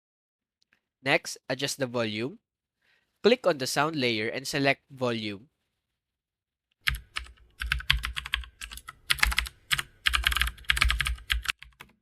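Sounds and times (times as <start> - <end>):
computer keyboard typing: 6.8 - 12.0.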